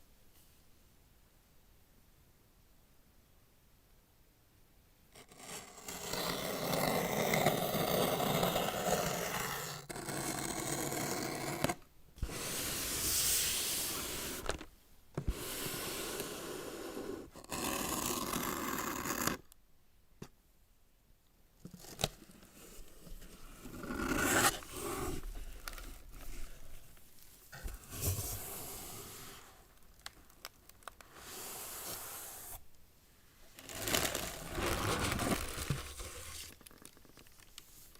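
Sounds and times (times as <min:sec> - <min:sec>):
cardboard scraping and tearing: 0:17.4 - 0:19.4, 0:23.5 - 0:26.9, 0:33.6 - 0:37.0
cardboard rustling: 0:33.6 - 0:37.9.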